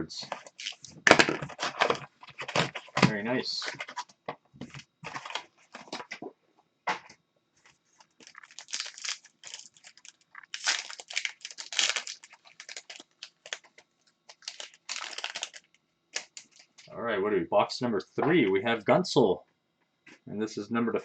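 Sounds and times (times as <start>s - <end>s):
card pack wrapper crinkling and tearing: 0.2s - 4.0s, 5.0s - 6.1s, 8.0s - 16.9s.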